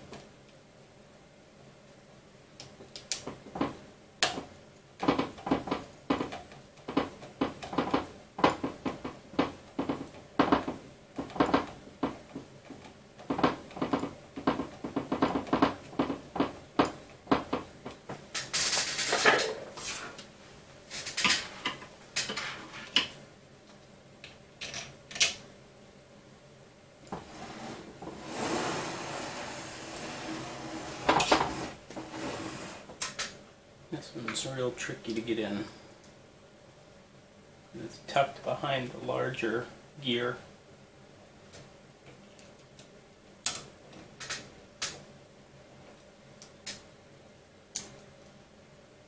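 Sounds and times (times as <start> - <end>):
small parts and tools clattering: 18.3 - 19.8
scraping rustle: 27.1 - 33.0.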